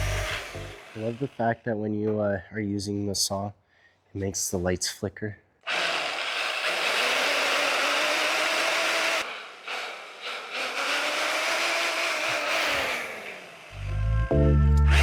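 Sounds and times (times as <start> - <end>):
power saw cutting metal: 0.0 - 1.5, 5.7 - 14.0.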